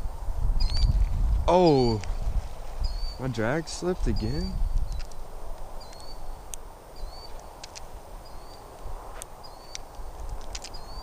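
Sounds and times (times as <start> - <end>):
bird chirping: 0.6 - 1.0, 2.8 - 8.8, 9.4 - 9.9, 10.6 - 11.0
sharp clicks: 7.3 - 7.9, 8.8 - 11.0.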